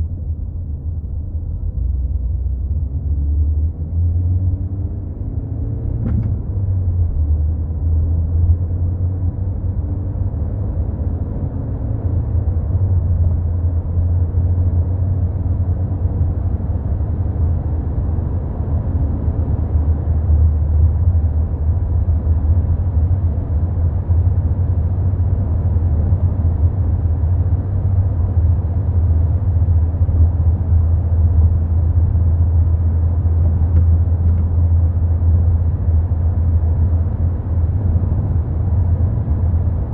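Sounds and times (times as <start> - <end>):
car driving rumble: 0.0 - 39.9.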